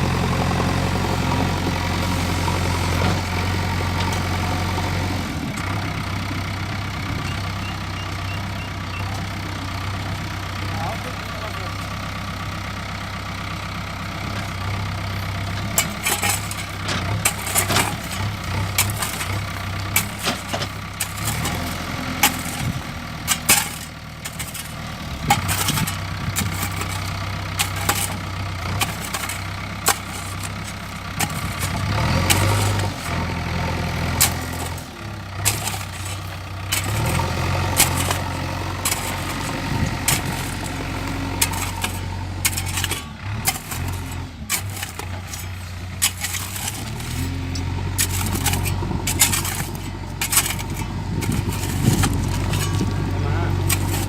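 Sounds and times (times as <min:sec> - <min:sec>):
diesel engine running: 0:00.0 - 0:54.0
metal knocks and clanks: 0:15.4 - 0:33.4, 0:34.0 - 0:54.0.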